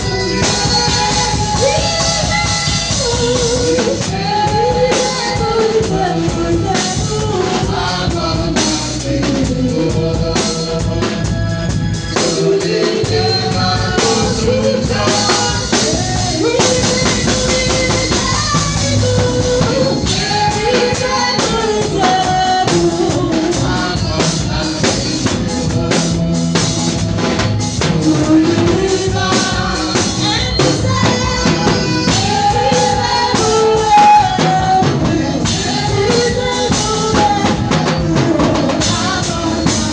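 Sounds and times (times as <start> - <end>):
drum kit beat: 0.0 - 39.9
person singing: 27.8 - 39.9.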